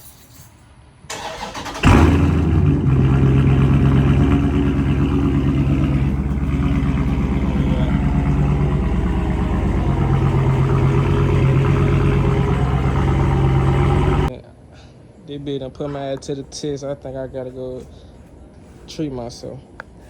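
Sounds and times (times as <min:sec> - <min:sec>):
car engine idling: 0:01.2 - 0:14.3.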